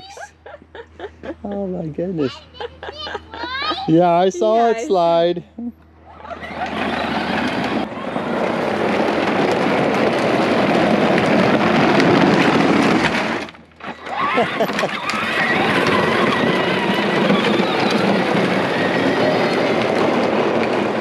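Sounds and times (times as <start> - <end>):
electric motors running: 0.0 - 5.4, 6.0 - 21.0
plastic wheels rolling and scraping: 6.3 - 21.0.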